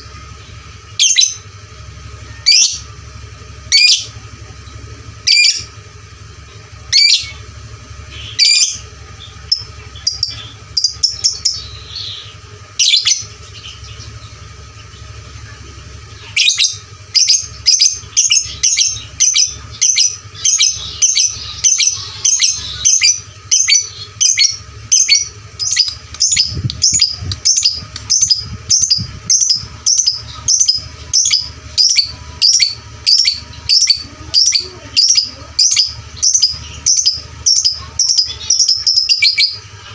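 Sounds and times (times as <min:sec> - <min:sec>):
lovebird chirping: 0:00.0 - 0:01.4, 0:02.3 - 0:02.9, 0:05.2 - 0:05.7, 0:06.9 - 0:07.4, 0:08.0 - 0:15.1, 0:16.1 - 0:39.7.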